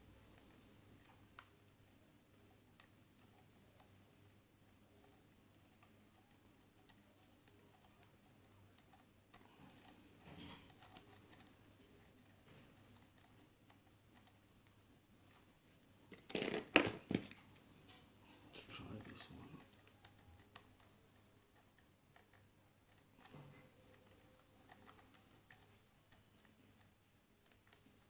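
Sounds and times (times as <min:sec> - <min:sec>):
lock pick clicking and scraping: 0:16.1 - 0:17.4.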